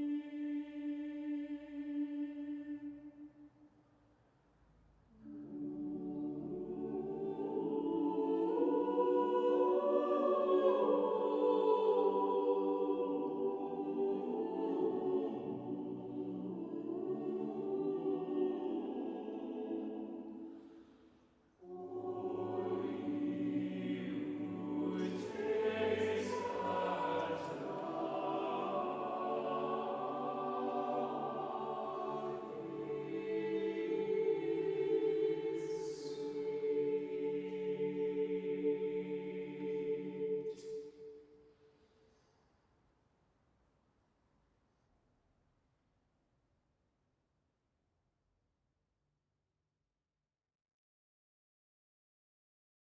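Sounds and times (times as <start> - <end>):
choir singing sustained chords: 0.0 - 3.7, 5.1 - 41.6.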